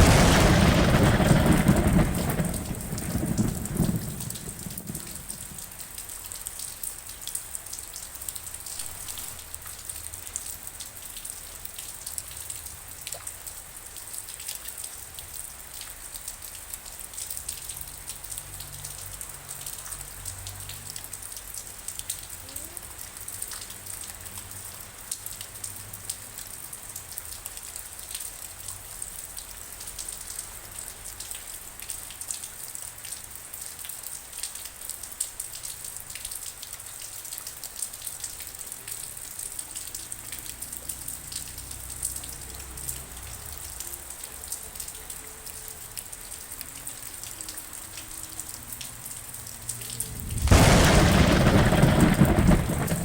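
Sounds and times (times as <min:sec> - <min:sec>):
thunder rumble: 0:00.0 - 0:06.0, 0:49.5 - 0:53.0
rain drops ticking: 0:00.0 - 0:53.0.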